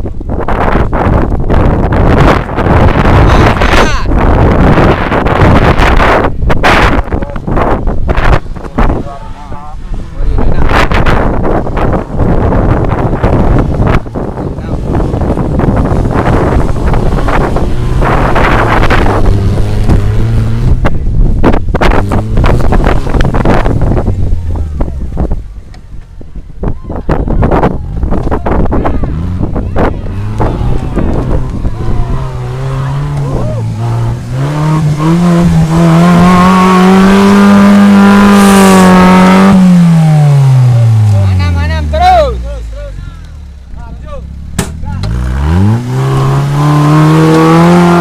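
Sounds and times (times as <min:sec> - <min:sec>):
wind buffeting microphone: 0:00.0 - 0:42.5
vehicle engine running: 0:27.8 - 0:48.0.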